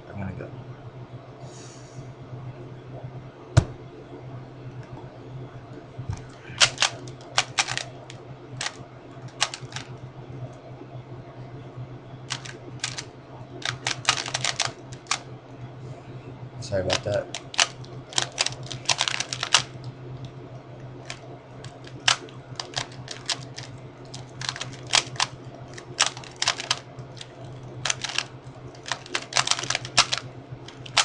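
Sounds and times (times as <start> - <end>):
puzzle cube plastic clicks: 6.6 - 8.0, 8.6 - 9.9, 12.3 - 15.2, 16.9 - 19.8, 21.1 - 31.0.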